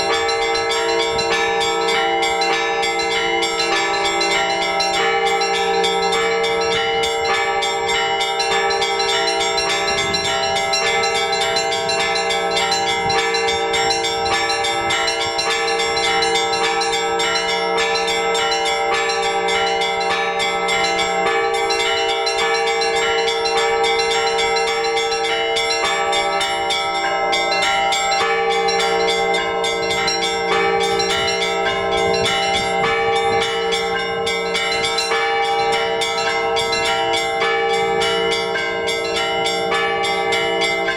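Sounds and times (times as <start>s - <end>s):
church bells pealing: 0.0s - 40.9s.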